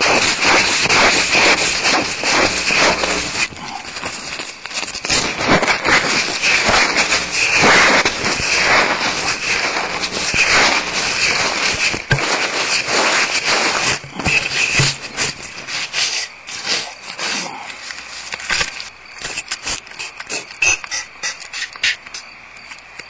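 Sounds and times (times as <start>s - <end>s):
owlets hissing: 0.0s - 18.4s.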